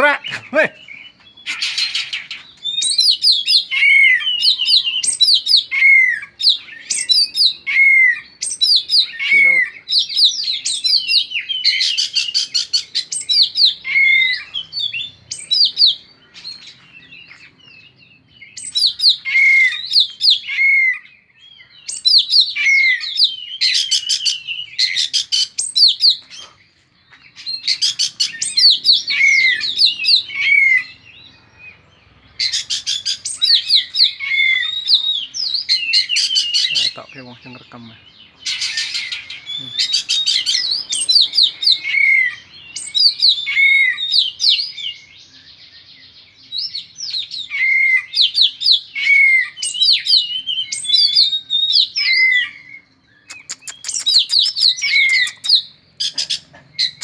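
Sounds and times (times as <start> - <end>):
bird singing: 0.0 - 57.0.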